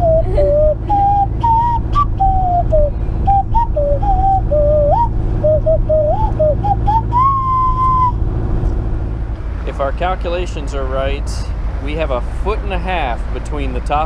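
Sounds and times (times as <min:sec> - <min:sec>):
person whistling a tune: 0:00.0 - 0:08.2
boat engine droning: 0:00.0 - 0:14.0.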